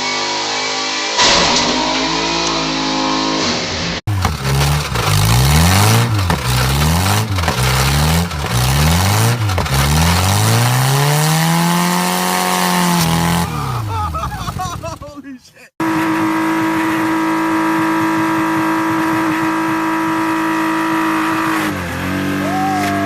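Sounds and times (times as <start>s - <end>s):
car engine revving hard: 0.0s - 14.6s, 15.8s - 22.7s.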